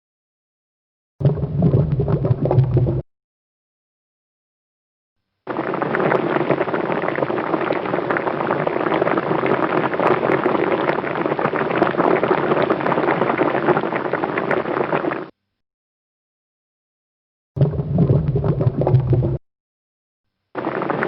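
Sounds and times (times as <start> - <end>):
water boiling hard: 1.2 - 3.0, 5.5 - 15.3, 17.6 - 19.4, 20.6 - 21.0.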